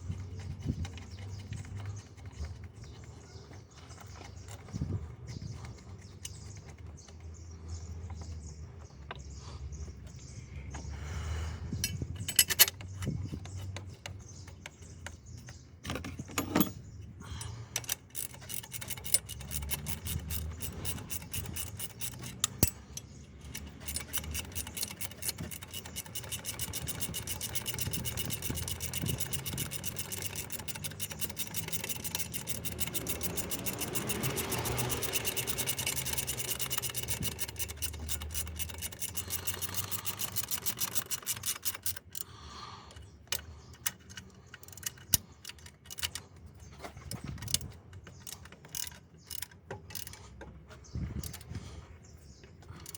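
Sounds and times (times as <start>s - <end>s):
rapid mechanical clicking: 0.0s - 9.2s, 17.7s - 51.6s, 52.2s - 52.9s
metal clinks and knocks: 11.8s - 42.2s, 43.2s - 51.6s.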